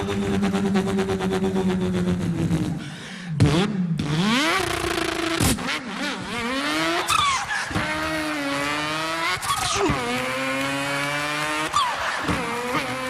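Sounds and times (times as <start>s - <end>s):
beatboxer imitating car engine: 0.0s - 5.7s.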